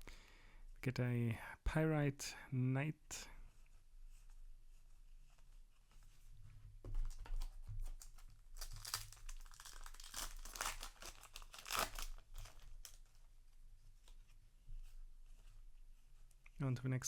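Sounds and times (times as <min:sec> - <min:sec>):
foil pack torn and crinkled: 0:08.0 - 0:13.0.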